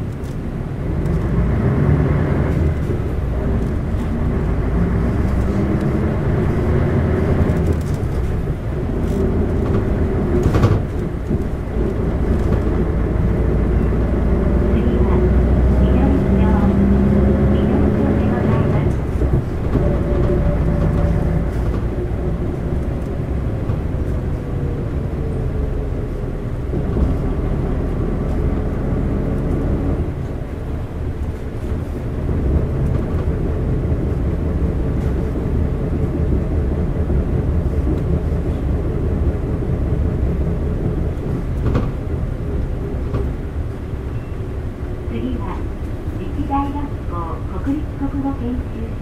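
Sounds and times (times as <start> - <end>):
bus diesel engine running: 0.0 - 49.0
road noise: 0.0 - 49.0.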